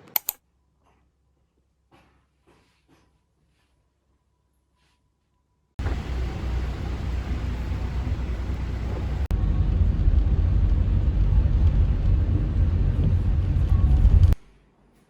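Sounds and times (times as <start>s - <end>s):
vehicle rumble: 5.8s - 14.4s.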